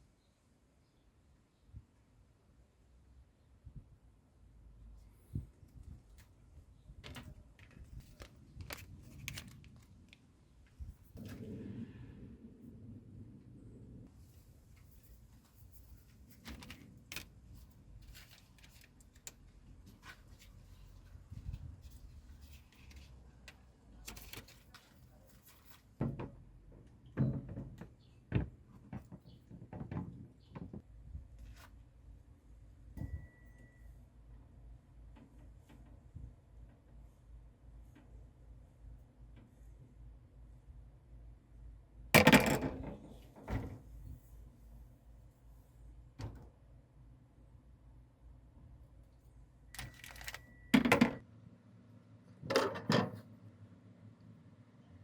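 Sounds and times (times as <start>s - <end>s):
objects knocking and clattering: 42.2s - 43.7s, 49.8s - 51.2s, 52.4s - 53.2s.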